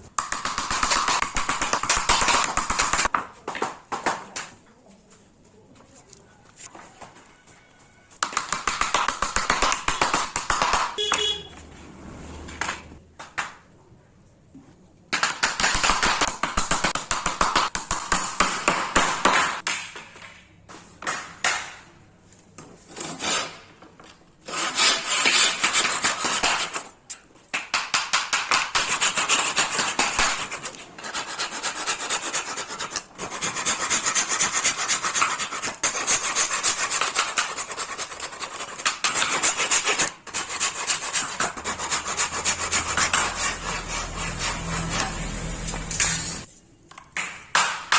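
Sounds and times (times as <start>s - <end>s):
hand tool scraping wood: 22.8s - 23.7s, 24.4s - 27.0s, 28.8s - 46.5s.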